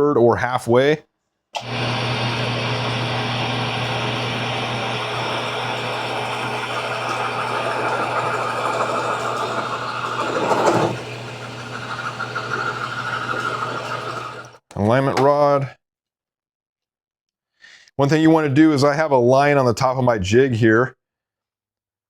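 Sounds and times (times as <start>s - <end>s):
drill press boring into ball: 1.6s - 14.6s
low motor hum: 1.6s - 14.6s.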